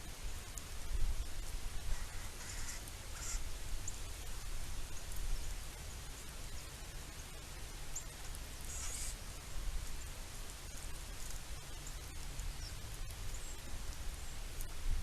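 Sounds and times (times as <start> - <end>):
high rustle: 8.2 - 15.0.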